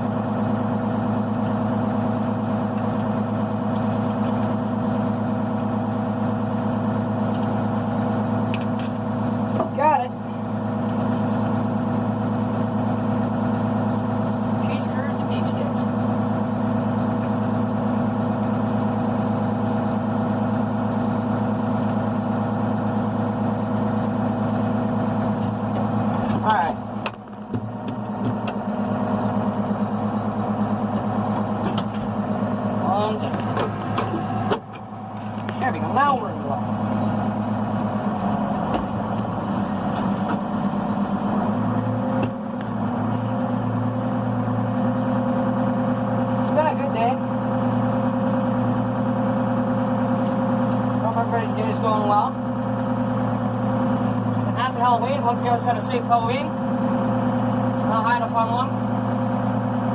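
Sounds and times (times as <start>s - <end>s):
tractor diesel engine droning: 0.0s - 59.9s.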